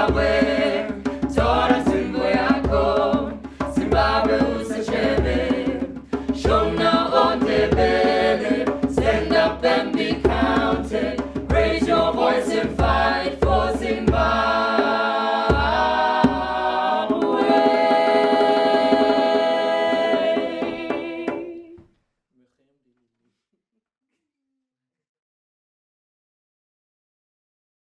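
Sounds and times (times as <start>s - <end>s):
choir singing in harmony: 0.0s - 21.7s
sharp percussive beats: 0.0s - 21.7s.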